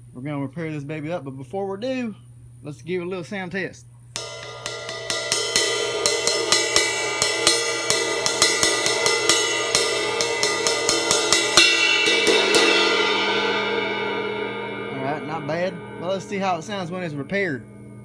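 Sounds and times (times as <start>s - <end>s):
cracked ride cymbal struck: 4.2s - 18.0s.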